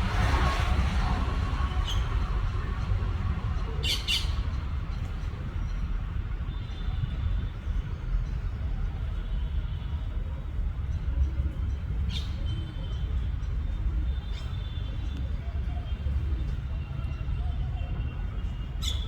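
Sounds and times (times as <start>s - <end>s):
steady low rumble: 0.0s - 6.2s.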